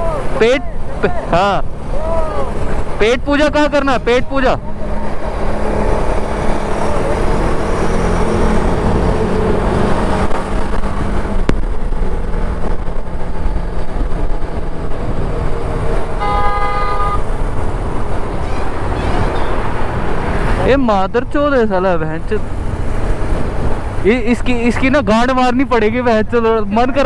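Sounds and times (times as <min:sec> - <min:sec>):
motorcycle engine hum: 0:00.0 - 0:27.0
vehicle horn: 0:16.2 - 0:17.4, 0:18.3 - 0:20.0
wind rush: 0:17.2 - 0:20.7.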